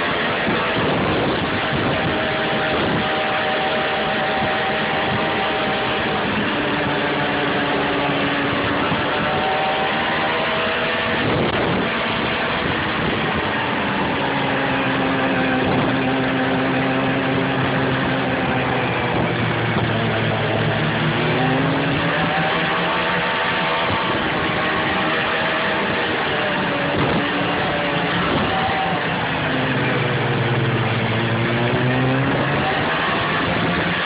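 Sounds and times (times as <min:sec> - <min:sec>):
snowmobile engine running: 0:00.0 - 0:34.0
steady rushing noise: 0:00.0 - 0:34.0.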